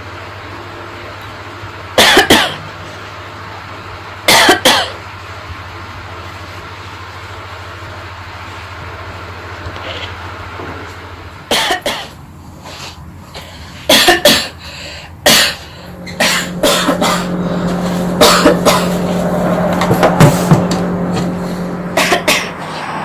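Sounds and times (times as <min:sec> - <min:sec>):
steady low hum: 0:15.2 - 0:23.0.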